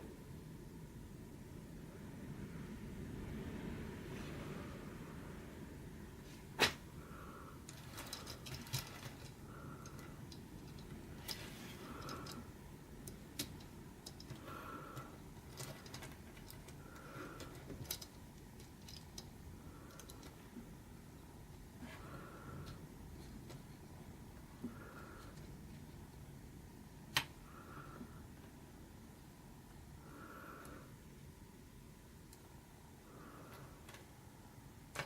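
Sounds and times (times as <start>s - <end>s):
plastic parts clicking: 7.7s - 12.4s, 13.0s - 19.3s.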